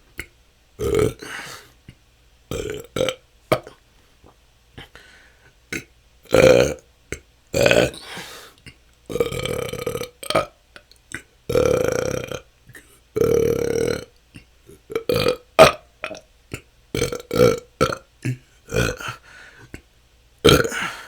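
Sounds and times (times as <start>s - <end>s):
person burping: 0.8s - 1.6s, 2.5s - 3.8s, 5.7s - 6.8s, 7.6s - 8.3s, 9.1s - 10.5s, 11.5s - 19.2s, 20.4s - 21.0s.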